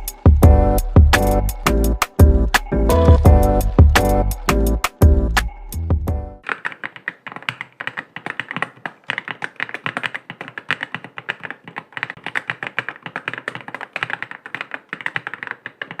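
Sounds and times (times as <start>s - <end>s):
mechanical keyboard typing: 6.4s - 16.0s.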